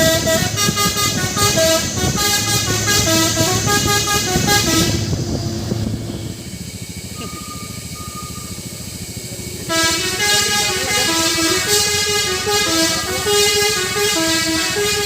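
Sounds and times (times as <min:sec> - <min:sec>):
multi-tone truck horn tune: 0:00.0 - 0:06.6, 0:09.7 - 0:15.0
truck engine running: 0:00.0 - 0:15.0.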